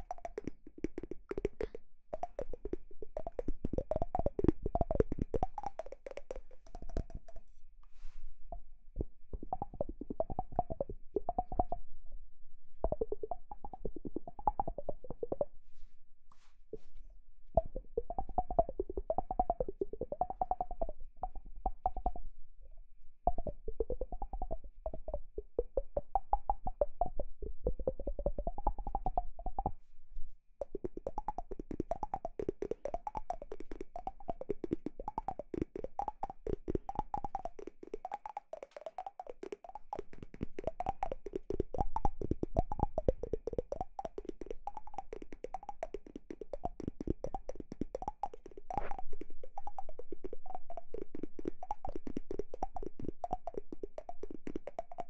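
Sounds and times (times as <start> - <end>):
rapid hollow clicking: 0.0 - 7.5, 30.6 - 55.0.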